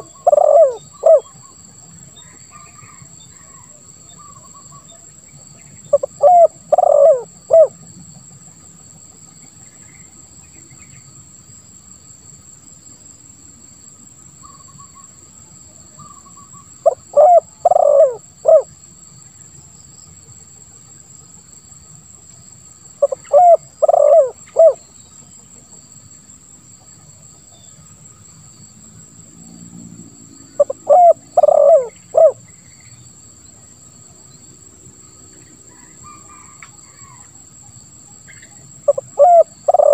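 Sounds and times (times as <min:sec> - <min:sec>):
dove cooing: 0:00.0 - 0:01.4, 0:05.9 - 0:07.8, 0:16.8 - 0:18.7, 0:23.0 - 0:24.8, 0:30.5 - 0:32.4, 0:38.9 - 0:39.9.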